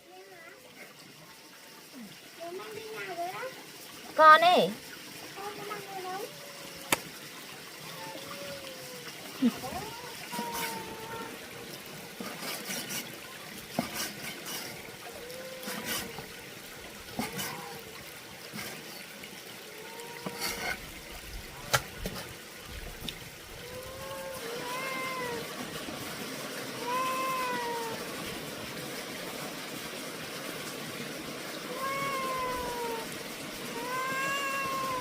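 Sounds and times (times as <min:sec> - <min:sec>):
running water: 0:00.0 - 0:35.0
cat meowing: 0:07.8 - 0:09.0, 0:09.7 - 0:11.3, 0:23.6 - 0:25.4, 0:26.8 - 0:28.0, 0:31.7 - 0:33.1, 0:33.7 - 0:35.0.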